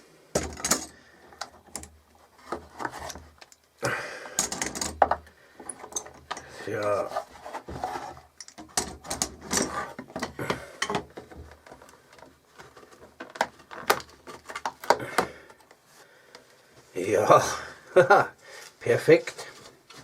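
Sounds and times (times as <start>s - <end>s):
leather handling clicks and knocks: 7.7s - 15.8s.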